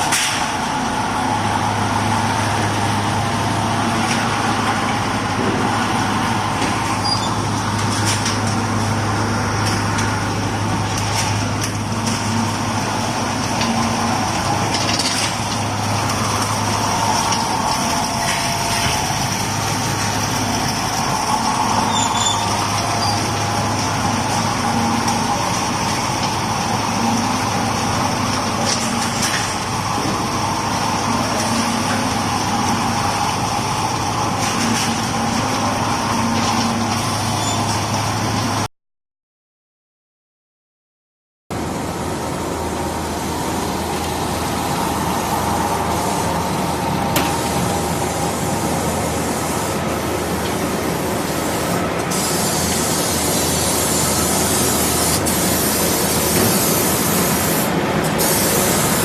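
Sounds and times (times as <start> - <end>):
road noise: 0.0 - 38.7, 41.5 - 59.0
vehicle engine hum: 0.0 - 38.7.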